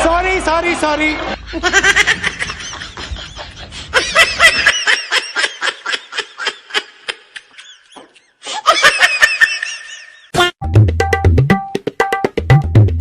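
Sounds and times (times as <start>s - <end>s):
high-pitched laughter: 1.4s - 10.3s.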